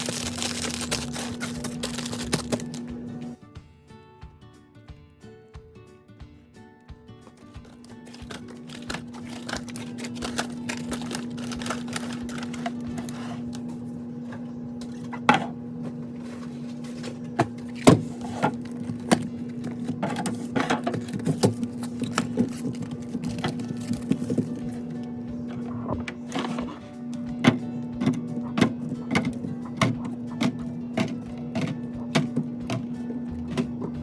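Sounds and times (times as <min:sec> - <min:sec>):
refrigerator hum: 0:00.0 - 0:03.5, 0:06.8 - 0:34.0
plastic containers knocking: 0:27.4 - 0:34.0.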